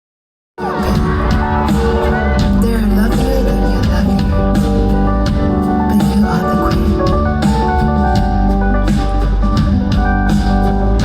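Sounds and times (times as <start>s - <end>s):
person singing: 0.6s - 8.0s
drums: 0.6s - 11.0s
live band playing: 0.6s - 11.0s.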